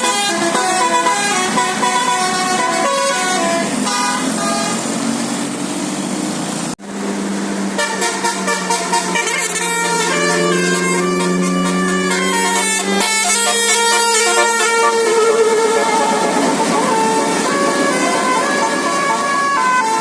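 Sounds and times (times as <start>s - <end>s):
bus musical horn tune: 0.0s - 5.0s, 7.7s - 20.0s
tune over low drone: 6.8s - 18.9s.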